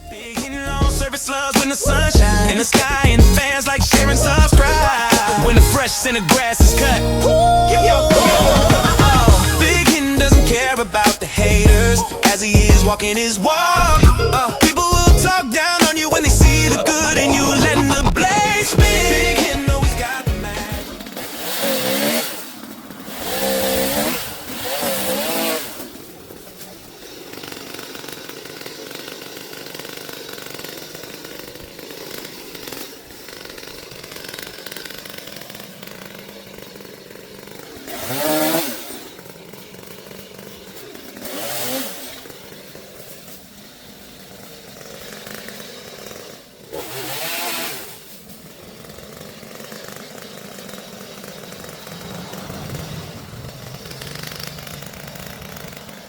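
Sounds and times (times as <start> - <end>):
chainsaw revving: 0.0 - 56.0.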